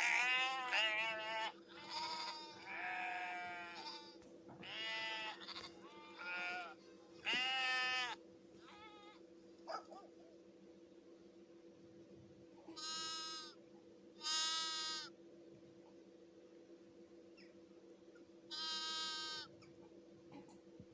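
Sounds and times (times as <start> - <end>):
sheep bleating: 0.0 - 9.2, 12.8 - 13.6, 14.2 - 15.1, 18.5 - 19.5.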